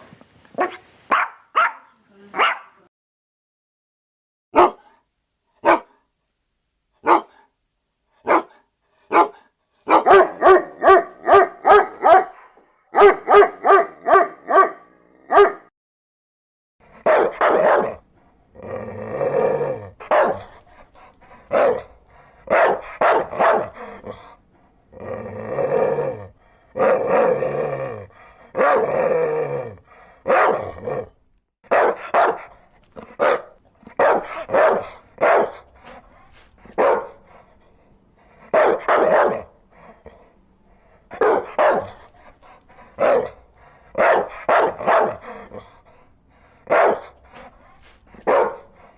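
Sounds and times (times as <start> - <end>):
dog barking: 0.6 - 2.8, 4.6 - 5.0, 5.6 - 6.1, 7.0 - 7.5, 8.2 - 15.7, 16.9 - 18.0, 20.0 - 20.6, 21.5 - 24.3, 28.5 - 29.0, 30.2 - 31.0, 31.7 - 35.9, 36.7 - 37.3, 38.4 - 39.6, 41.1 - 42.3, 43.0 - 45.7, 46.6 - 47.5, 48.1 - 48.8.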